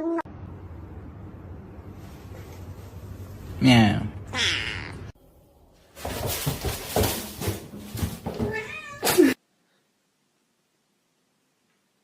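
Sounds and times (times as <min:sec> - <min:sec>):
background noise: 0:00.1 - 0:12.0
cat meowing and yowling: 0:08.5 - 0:09.2.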